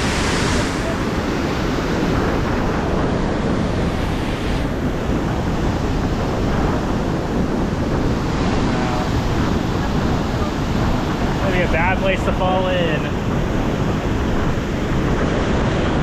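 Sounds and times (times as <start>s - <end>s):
river rapids rushing: 0.0s - 2.7s
wind buffeting microphone: 0.0s - 16.0s.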